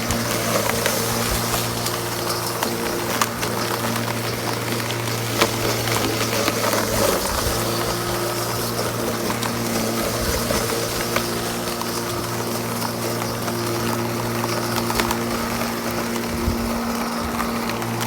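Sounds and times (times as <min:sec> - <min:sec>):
cordless lawnmower humming: 0:00.0 - 0:18.0.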